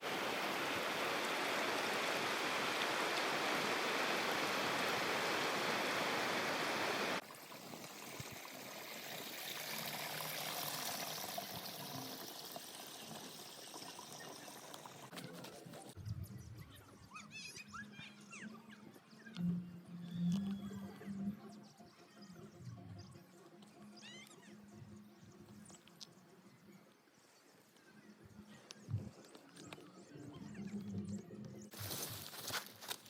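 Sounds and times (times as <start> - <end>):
river water rushing: 0.0 - 7.2
quiet outdoor background: 0.0 - 33.0.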